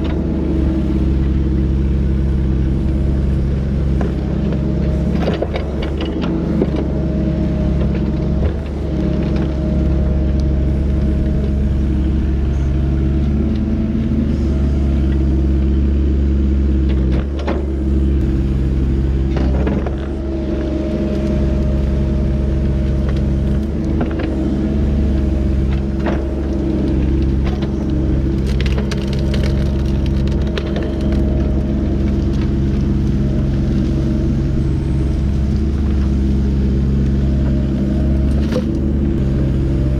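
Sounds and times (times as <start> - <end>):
excavator diesel engine running: 0.0 - 39.9
wood snapping and cracking: 25.6 - 34.0.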